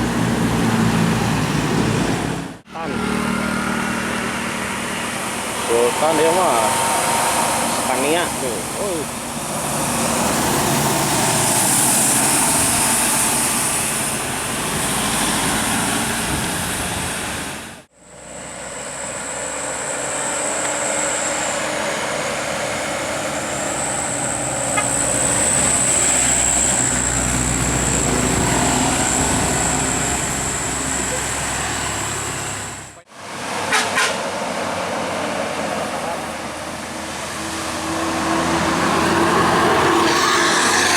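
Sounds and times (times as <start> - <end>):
road traffic passing: 0.0 - 40.9.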